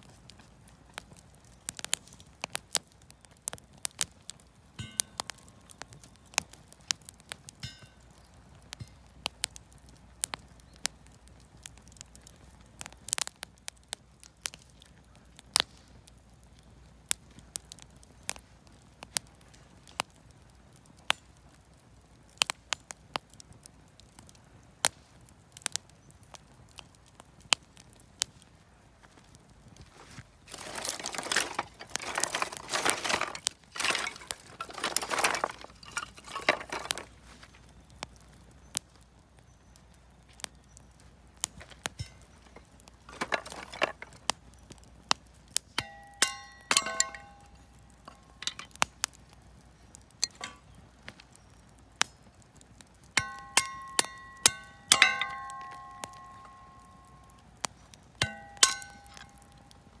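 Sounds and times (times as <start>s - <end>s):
wood fire crackling and popping: 0.0s - 60.0s
rustling: 29.8s - 37.6s, 41.5s - 44.3s
ringing metallic clinks: 45.8s - 48.7s, 53.2s - 57.4s, 58.2s - 59.7s.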